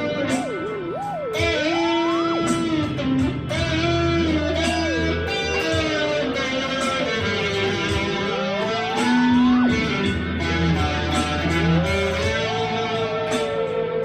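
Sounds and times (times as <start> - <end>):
sliding lead melody: 0.0 - 14.0
sustained bass notes: 0.0 - 14.0.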